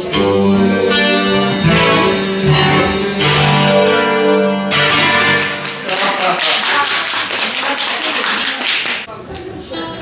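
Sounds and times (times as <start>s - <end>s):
guitar playing a slow bolero: 0.0s - 5.9s.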